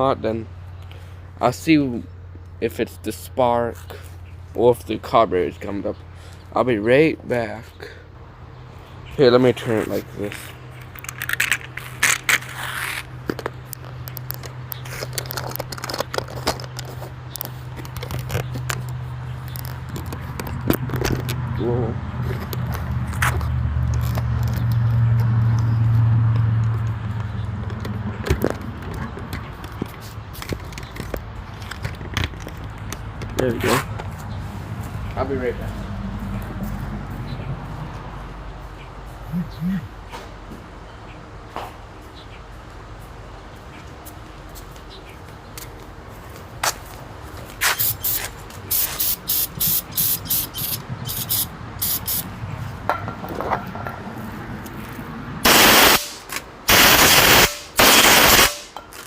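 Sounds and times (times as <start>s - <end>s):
aerosol spray hissing bursts: 47.7s - 52.2s.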